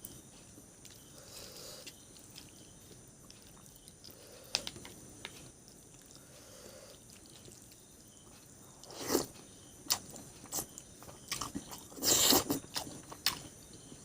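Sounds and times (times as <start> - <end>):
person chewing food: 0.0 - 14.0.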